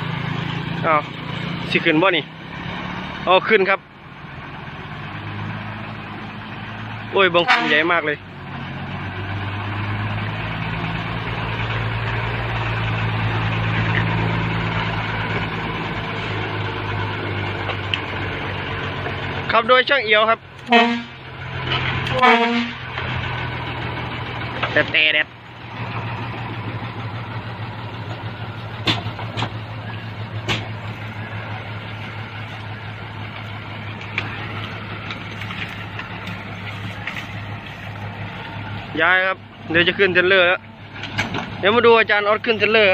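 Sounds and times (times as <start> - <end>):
diesel engine humming: 0.0 - 42.9
sharp knocks: 28.8 - 29.6, 30.4 - 30.8.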